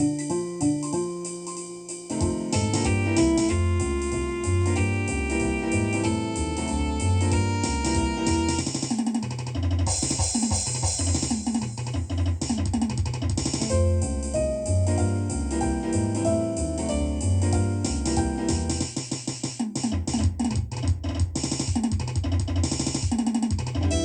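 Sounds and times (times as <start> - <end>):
jazz with piano and drums: 0.0 - 24.0
low bass line: 2.5 - 8.6, 13.8 - 18.8.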